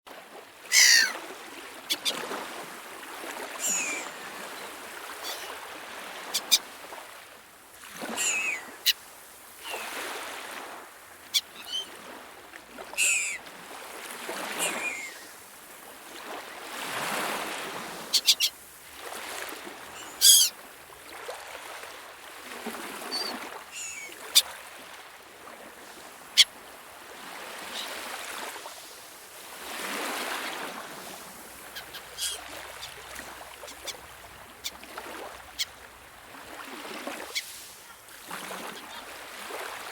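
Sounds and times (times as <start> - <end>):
waves washing: 0.1 - 39.9
seagulls calling: 0.6 - 1.2, 1.8 - 2.3, 3.6 - 4.5, 5.1 - 5.6, 6.2 - 6.7, 8.1 - 9.0, 11.2 - 12.0, 12.9 - 13.4, 14.7 - 15.3, 18.1 - 18.6, 19.9 - 20.5, 23.0 - 24.5, 26.2 - 26.6, 27.6 - 28.0, 31.6 - 35.8.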